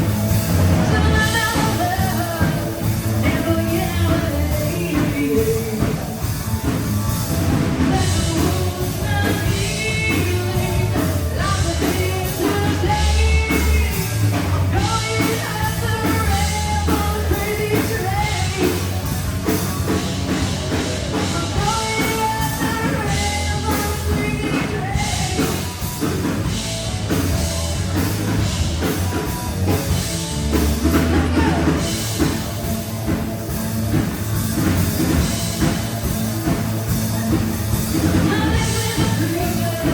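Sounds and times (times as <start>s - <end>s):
bass guitar: 0.0s - 39.9s
drums: 0.0s - 39.9s
person singing: 0.6s - 6.8s, 7.5s - 19.3s, 21.1s - 26.2s, 30.8s - 32.5s, 37.8s - 39.9s.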